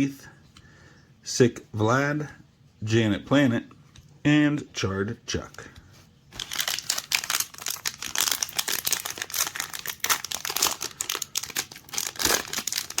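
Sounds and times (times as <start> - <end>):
wrapper crinkling and tearing: 6.3 - 13.0.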